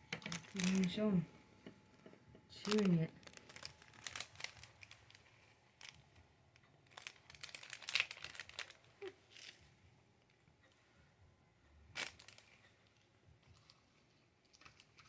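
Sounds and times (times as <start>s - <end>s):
snack bag crinkling: 0.2s - 0.9s, 2.6s - 6.1s, 6.8s - 9.6s, 12.0s - 15.0s.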